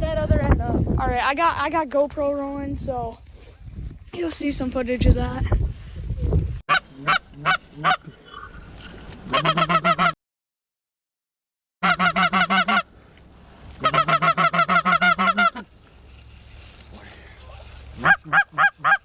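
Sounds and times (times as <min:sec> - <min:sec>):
goose honking: 0:09.3 - 0:10.2, 0:11.8 - 0:12.9, 0:13.8 - 0:15.8, 0:18.0 - 0:19.0.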